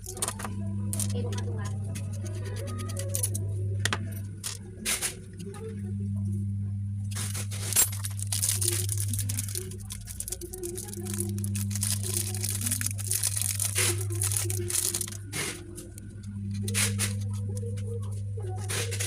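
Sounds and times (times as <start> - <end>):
low hum: 0.0 - 19.0
packaging rustling and crackling: 7.2 - 17.8.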